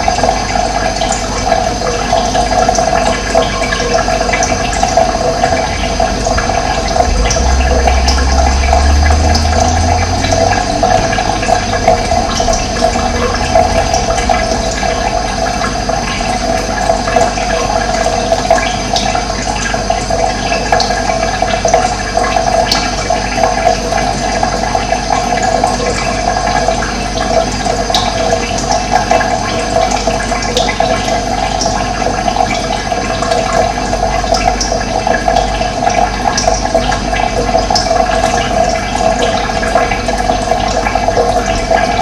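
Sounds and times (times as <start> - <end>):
running water flowing: 0.0 - 42.0.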